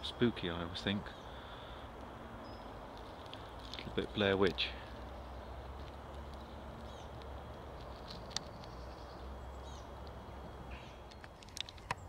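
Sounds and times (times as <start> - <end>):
high bird calls: 6.4 - 7.2, 8.3 - 12.0.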